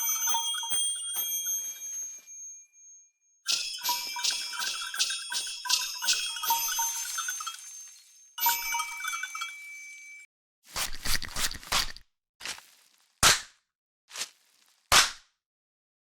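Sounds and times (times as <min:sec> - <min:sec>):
sleigh bells jingling: 0:00.0 - 0:10.3.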